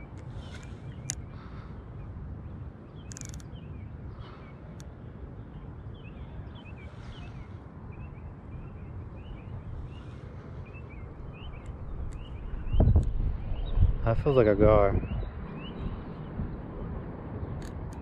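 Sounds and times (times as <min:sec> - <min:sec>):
small birds chirping: 0:00.0 - 0:18.0
steady low rumble: 0:00.0 - 0:18.0
brief clicks: 0:03.1 - 0:03.5.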